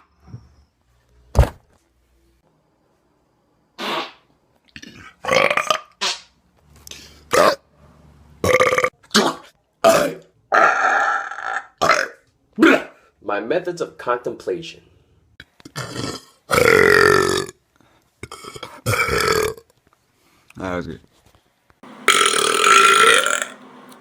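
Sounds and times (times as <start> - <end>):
person burping: 4.8 - 5.9, 8.4 - 12.2, 15.7 - 17.6, 18.2 - 19.6, 22.1 - 23.6.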